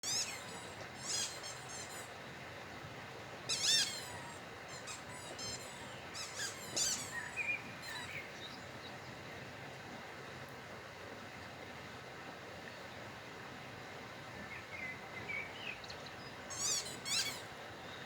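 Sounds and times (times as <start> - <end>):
squeaky toy squeaking: 0.0 - 2.1, 3.5 - 8.1, 16.5 - 17.4.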